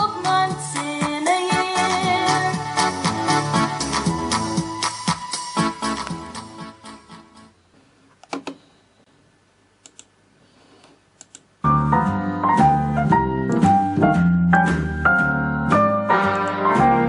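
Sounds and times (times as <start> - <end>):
music through speaker: 0.0 - 7.5, 11.7 - 17.0
keyboard and piano song with bass: 0.0 - 7.6, 11.6 - 17.0
faint clicks: 9.8 - 10.1, 10.8 - 11.5.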